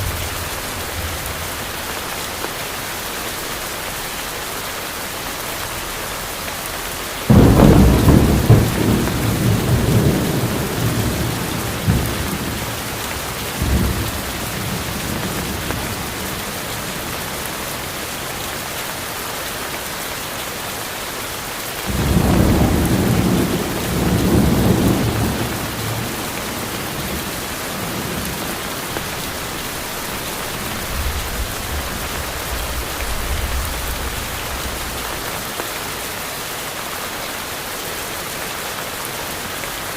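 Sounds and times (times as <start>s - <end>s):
heavy rain: 0.0s - 39.9s
thunder rolling: 7.3s - 17.2s, 21.9s - 35.1s.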